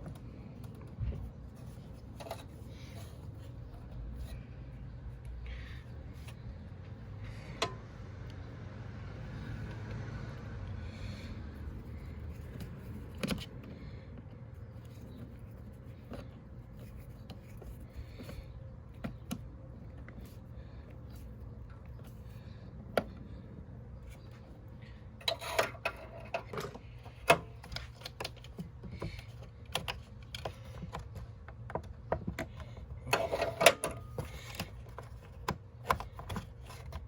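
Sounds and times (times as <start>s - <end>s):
low steady hum: 0.0s - 37.0s
hand tools clicking and scraping: 25.2s - 37.0s.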